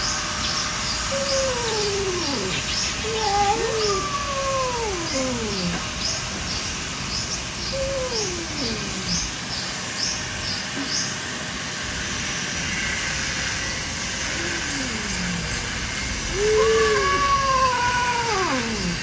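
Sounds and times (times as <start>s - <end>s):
cats yowling: 1.0s - 6.6s, 7.4s - 9.6s, 14.0s - 19.0s.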